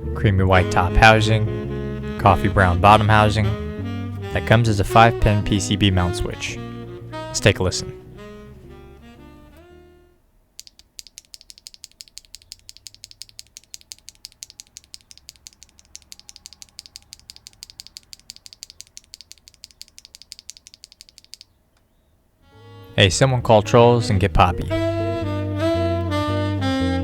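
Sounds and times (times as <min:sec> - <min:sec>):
keyboard switch clicking: 0:10.6 - 0:21.5.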